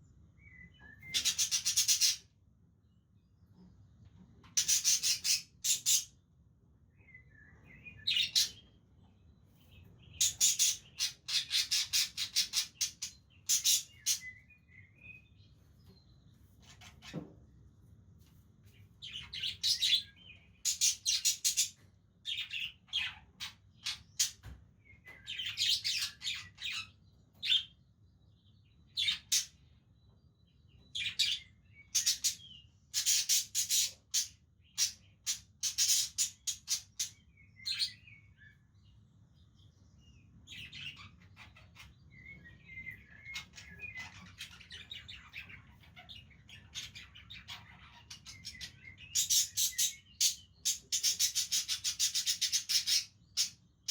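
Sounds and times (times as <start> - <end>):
budgerigars chirping: 1.0 - 2.2, 4.4 - 6.1, 8.1 - 8.7, 10.1 - 14.4, 19.0 - 24.4, 31.0 - 38.1, 40.5 - 53.9.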